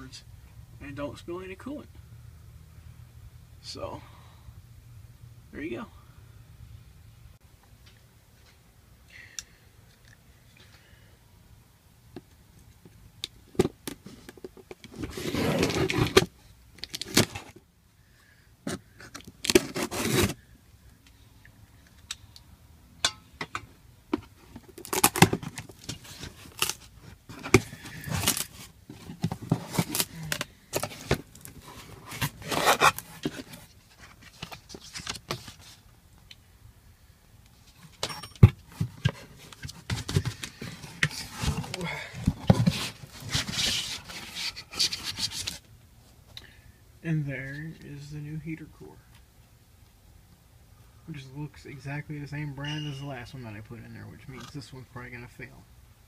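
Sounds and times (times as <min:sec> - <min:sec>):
parts scraping and clinking: 0:23.0 - 0:35.7, 0:37.6 - 0:45.5, 0:52.6 - 0:53.5.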